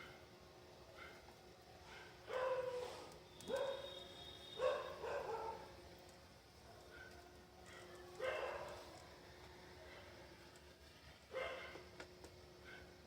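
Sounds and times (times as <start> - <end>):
dog barking: 1.0 - 1.2, 1.8 - 3.9, 4.6 - 5.7, 6.8 - 8.8, 11.3 - 11.8.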